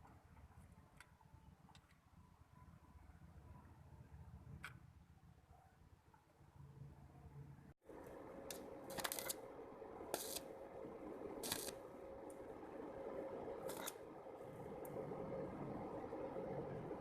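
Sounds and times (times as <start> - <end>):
sharp noise bursts: 7.9 - 17.0.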